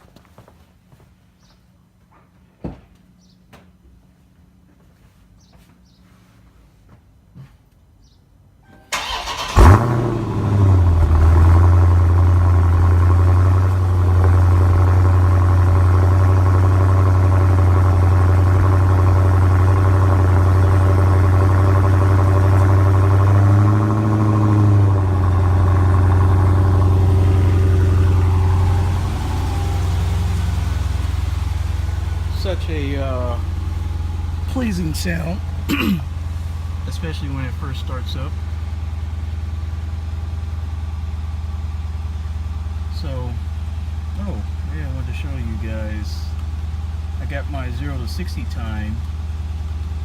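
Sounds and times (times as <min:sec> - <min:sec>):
starter motor cranking: 0:08.9 - 0:10.1
car engine idling: 0:08.9 - 0:50.0.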